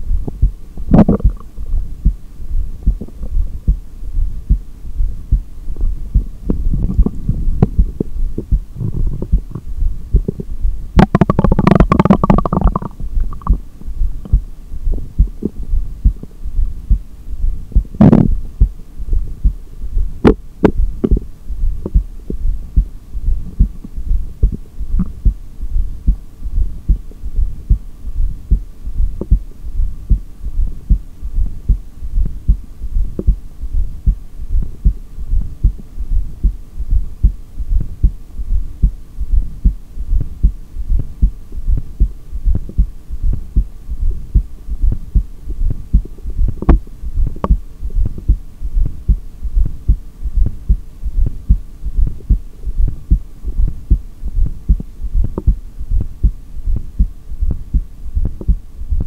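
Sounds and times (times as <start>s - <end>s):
faint steady hum: 0.0s - 59.0s
heartbeat through stethoscope: 0.0s - 59.0s
stomach growl: 6.8s - 8.1s, 8.8s - 13.6s.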